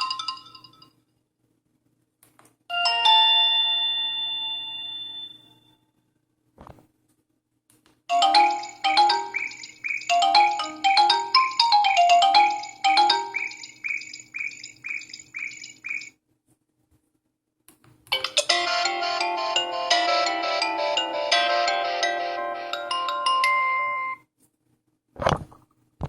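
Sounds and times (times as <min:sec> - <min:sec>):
fuller phone ringtone: 0:00.0 - 0:00.9, 0:02.7 - 0:05.8, 0:08.1 - 0:16.1, 0:18.2 - 0:24.2
bright mallet-like ringtone: 0:02.7 - 0:05.8, 0:08.1 - 0:16.1, 0:18.2 - 0:24.2.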